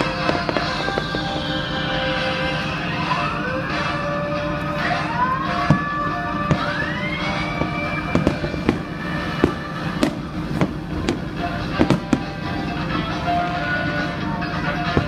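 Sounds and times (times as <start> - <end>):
fireworks bangs and pops: 0.0 - 3.3, 4.7 - 13.0
background music: 0.0 - 15.0
firework whistle: 0.0 - 15.0.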